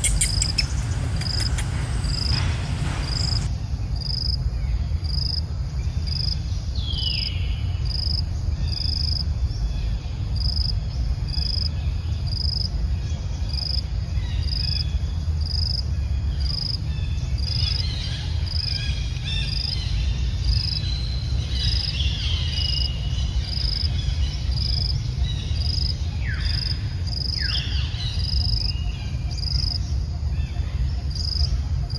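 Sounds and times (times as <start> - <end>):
short high falling calls: 0.0 - 3.5
low rumble: 0.0 - 4.0
insects chirping: 0.0 - 4.4.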